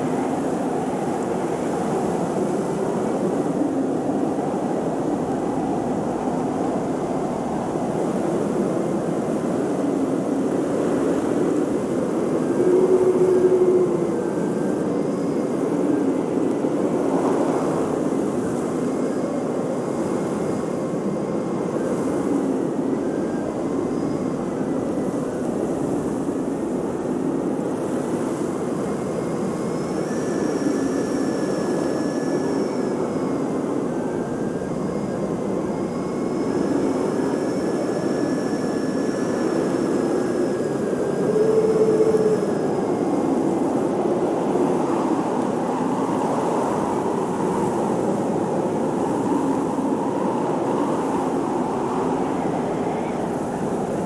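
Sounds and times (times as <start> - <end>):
faint high whistling tones: 8.2 - 27.2, 28.2 - 54.0
blizzard wind rushing: 33.0 - 54.0.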